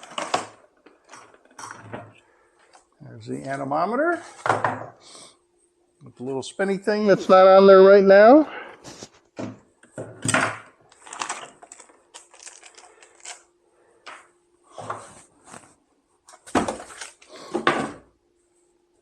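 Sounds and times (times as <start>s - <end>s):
packing material rustling: 10.9s - 13.5s.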